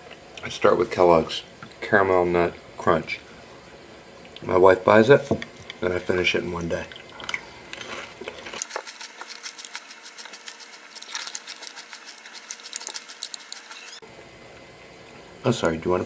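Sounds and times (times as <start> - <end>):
crunchy cereal being chewed: 6.9 - 14.0.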